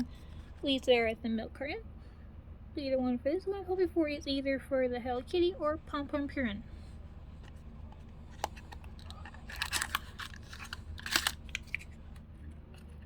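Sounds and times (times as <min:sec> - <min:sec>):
packaging crinkling and tearing: 0:07.4 - 0:12.2
packaging click: 0:08.3 - 0:12.0.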